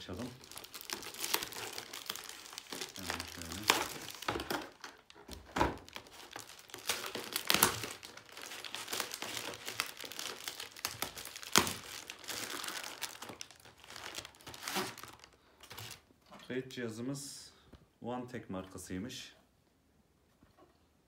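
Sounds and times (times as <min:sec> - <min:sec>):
plastic packaging crinkling: 0:00.0 - 0:16.1.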